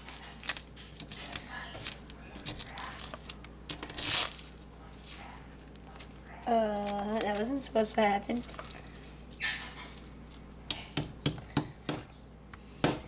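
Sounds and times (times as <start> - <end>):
crinkling and rustling: 0.0 - 7.6, 8.3 - 10.6.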